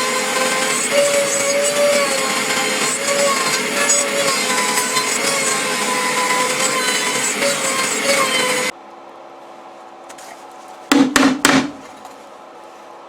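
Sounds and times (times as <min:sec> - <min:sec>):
router cutting with a whine: 0:00.0 - 0:08.7
sharp knocks: 0:10.9 - 0:11.9.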